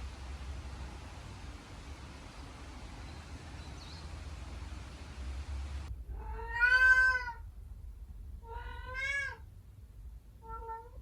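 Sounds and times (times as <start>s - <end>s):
cat meowing: 6.1s - 7.4s, 8.4s - 9.4s, 10.4s - 11.0s.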